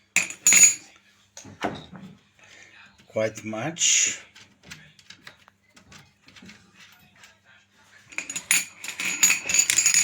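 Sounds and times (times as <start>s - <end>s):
small metal parts clinking: 0.2s - 0.8s, 8.1s - 10.0s.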